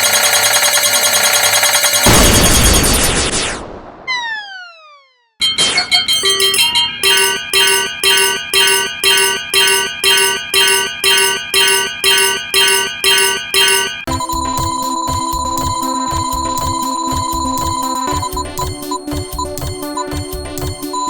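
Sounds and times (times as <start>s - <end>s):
steady electronic ringing tone: 0.0s - 3.0s, 5.4s - 21.0s
railroad crossing bell ringing: 5.4s - 18.2s.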